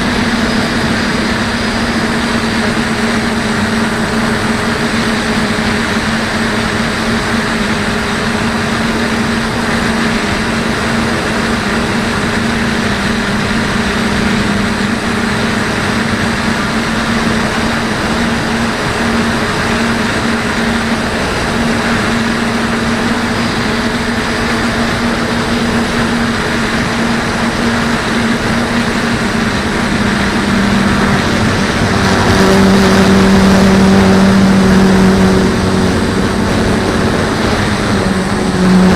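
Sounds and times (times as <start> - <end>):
quadcopter propellers humming: 0.0 - 38.9
wind noise: 0.0 - 38.9.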